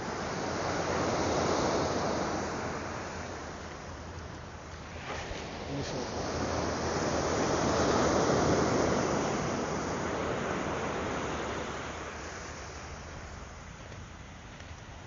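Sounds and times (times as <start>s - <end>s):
wave breaking on beach: 4.7s - 13.6s.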